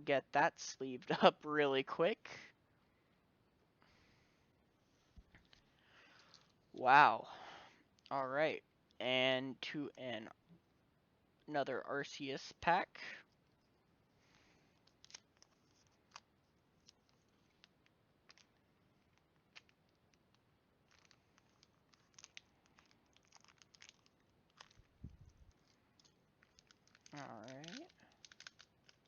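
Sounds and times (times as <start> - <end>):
foil pack crinkling: 14.8 - 18.5, 20.8 - 29.0.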